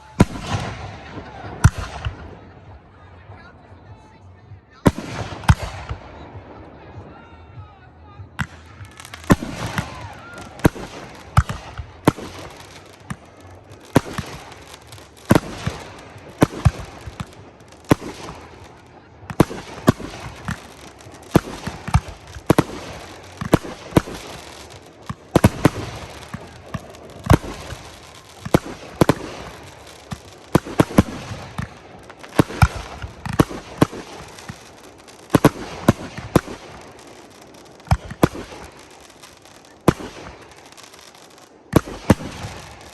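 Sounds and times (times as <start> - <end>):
fireworks banging: 0.0 - 42.9
fireworks crackling: 0.0 - 42.9.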